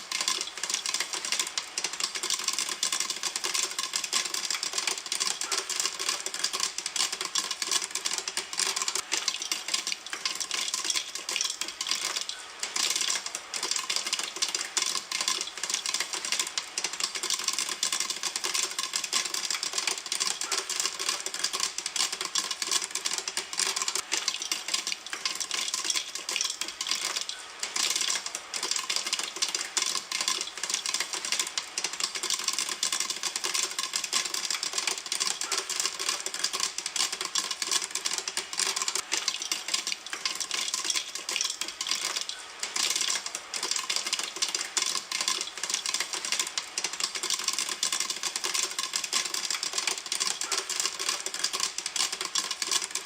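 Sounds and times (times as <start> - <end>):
popcorn popping in a pan: 0.0 - 53.0.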